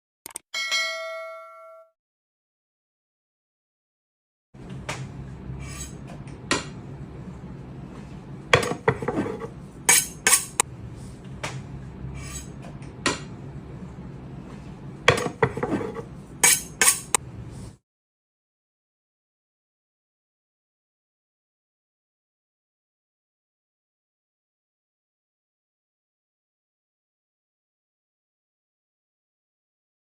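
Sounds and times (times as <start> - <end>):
steady low hum: 4.6 - 17.8
knife blade being sharpened: 5.6 - 6.0, 9.2 - 10.6, 12.2 - 12.6, 15.8 - 17.2.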